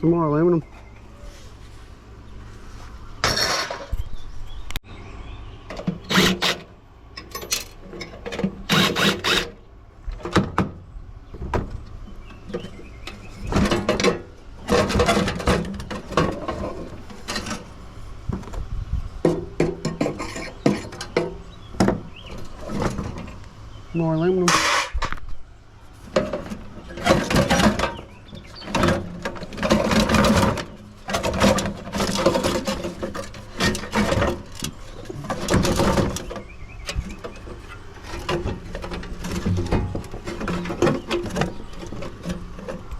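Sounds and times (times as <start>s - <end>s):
metal parts clanking and rattling: 3.2s - 4.1s, 5.7s - 10.7s, 12.4s - 17.8s, 19.2s - 23.5s, 24.4s - 25.2s, 26.0s - 42.9s.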